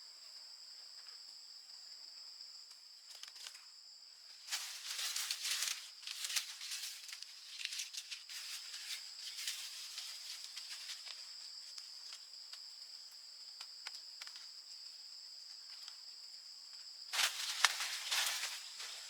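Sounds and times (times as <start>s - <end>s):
insect chorus: 0.0s - 19.0s
crackling rustle: 4.3s - 12.7s, 17.1s - 19.0s.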